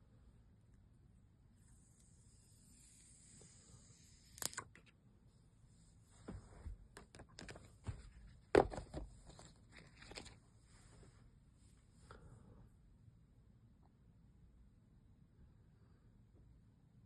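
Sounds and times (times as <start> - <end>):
cardboard and plastic rustling: 6.2 - 10.4.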